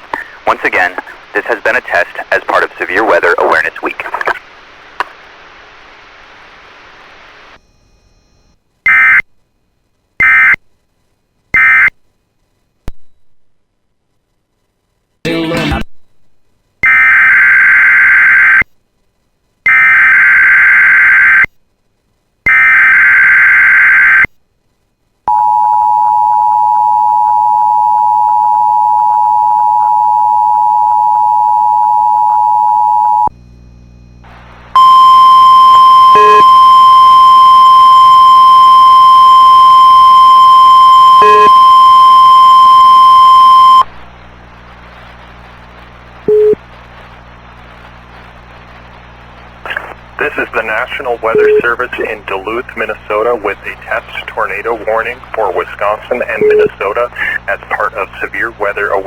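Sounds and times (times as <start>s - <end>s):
steady warning alarm tone: 34.8s - 43.8s.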